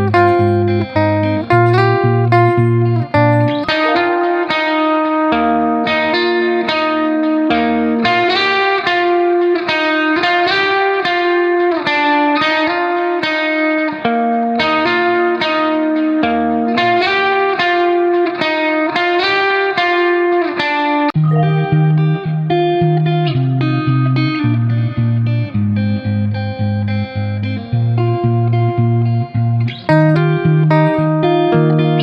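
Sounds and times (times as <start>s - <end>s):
low bass note: 0.0s - 4.3s
plucked guitar notes: 0.0s - 11.8s, 21.2s - 32.0s.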